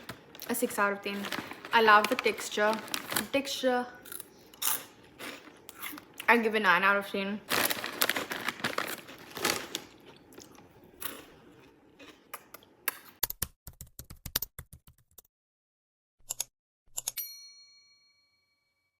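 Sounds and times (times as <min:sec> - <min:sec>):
soft crunching and rustling: 0:00.0 - 0:03.4
bell ding: 0:17.2 - 0:18.9.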